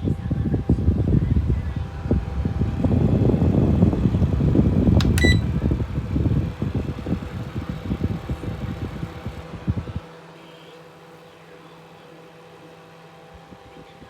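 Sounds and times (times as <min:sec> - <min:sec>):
fan air buffeting microphone: 0:00.0 - 0:14.0
switch click: 0:05.0 - 0:05.5
short electronic beep: 0:05.2 - 0:05.4.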